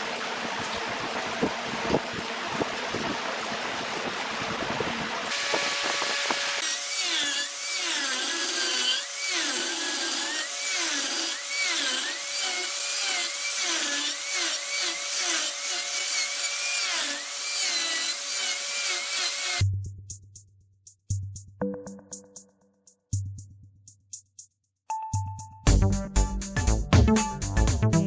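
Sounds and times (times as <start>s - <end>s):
turning tool cutting wood: 5.3s - 19.6s.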